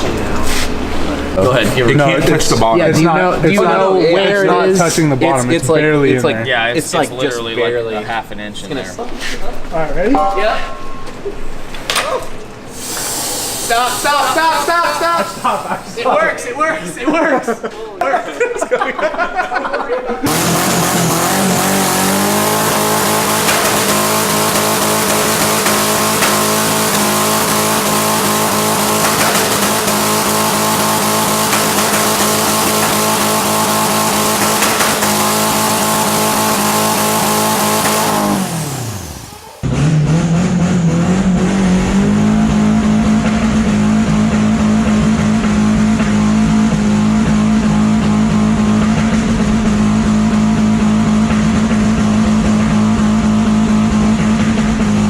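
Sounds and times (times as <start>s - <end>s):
turbo hiss: 12.7s - 16.1s
car engine revving high: 20.2s - 55.0s.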